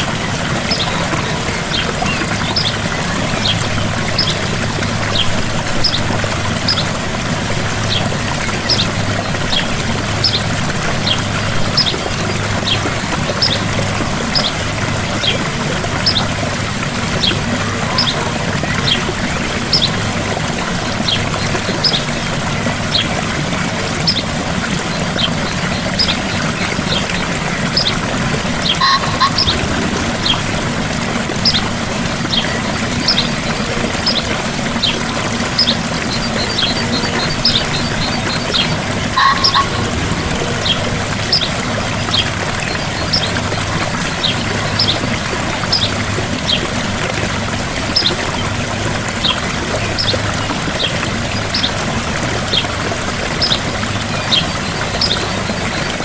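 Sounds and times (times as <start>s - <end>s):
waterfall rushing: 0.0s - 56.0s
short high chirps: 39.2s - 39.9s.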